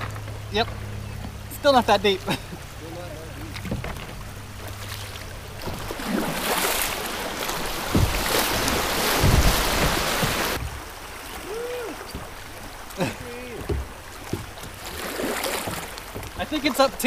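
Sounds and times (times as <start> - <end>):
floodwater rushing and splashing: 0.0 - 17.0
low thumps: 5.4 - 11.0, 13.1 - 15.0.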